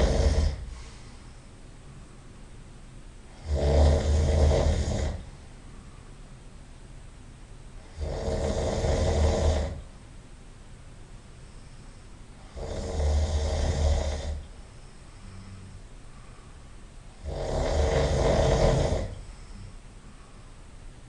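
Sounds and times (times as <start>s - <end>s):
man snoring loudly: 0.0s - 0.8s, 3.3s - 5.3s, 7.8s - 9.9s, 12.4s - 14.5s, 17.2s - 19.3s.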